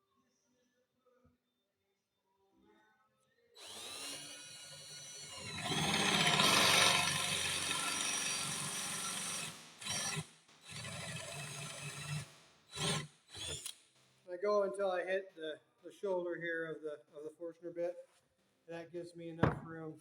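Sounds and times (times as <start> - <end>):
electric drill boring into wood: 3.6 - 13.8.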